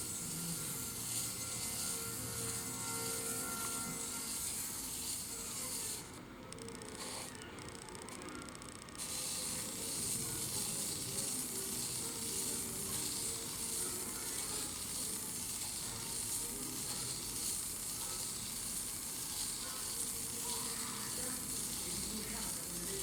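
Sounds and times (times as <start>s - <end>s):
sandpaper scratching: 0.0s - 6.1s.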